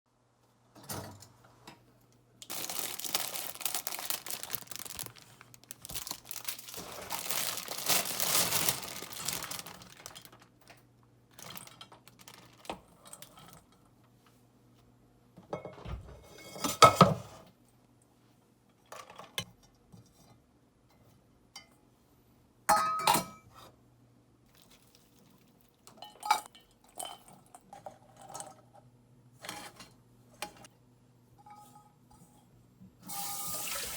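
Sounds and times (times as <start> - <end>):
rustling noise: 2.5 - 10.5.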